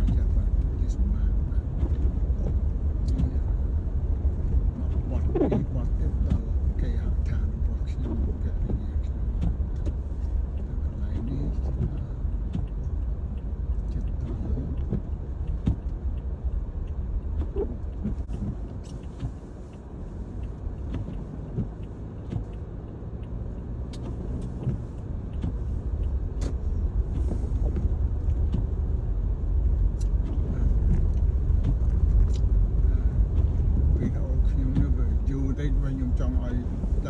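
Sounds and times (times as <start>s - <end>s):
tyres and engine rumbling: 0.0s - 37.0s
light clicks: 6.0s - 29.0s.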